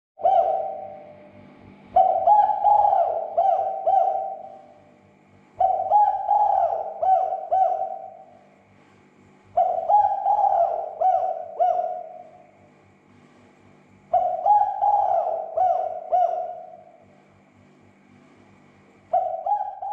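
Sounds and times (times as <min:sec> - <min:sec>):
doves cooing: 0:00.2 - 0:01.3, 0:01.9 - 0:08.8, 0:09.5 - 0:12.6, 0:14.0 - 0:17.2, 0:19.0 - 0:19.9.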